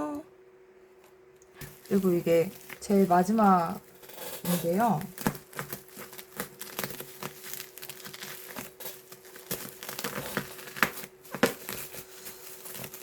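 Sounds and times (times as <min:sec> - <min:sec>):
packaging crinkling and rustling: 0:01.6 - 0:13.0.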